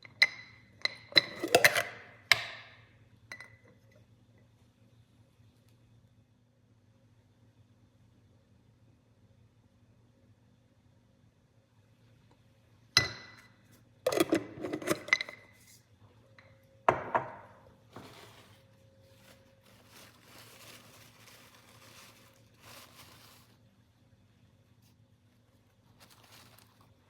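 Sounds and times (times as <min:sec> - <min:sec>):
dishes clinking: 0:14.1 - 0:15.6
faint rustling: 0:17.9 - 0:23.6.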